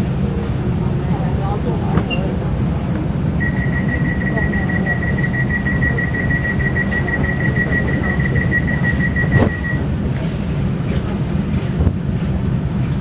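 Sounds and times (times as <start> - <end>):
train running rumble: 0.0 - 13.0
high rapidly pulsing tone: 3.3 - 9.8.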